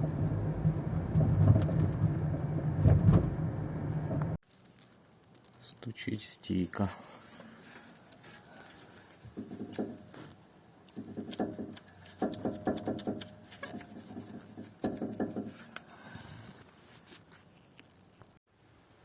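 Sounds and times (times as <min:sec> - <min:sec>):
suspension link knocking: 0:10.9 - 0:15.8.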